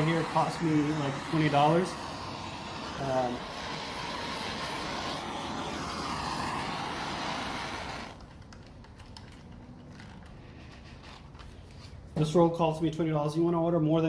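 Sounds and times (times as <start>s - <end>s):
heat gun blowing hot air: 0.0s - 8.3s.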